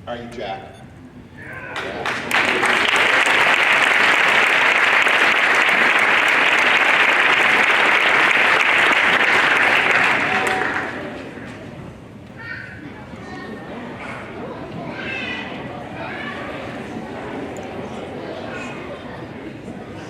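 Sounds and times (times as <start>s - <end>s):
audience applause: 1.4s - 11.8s.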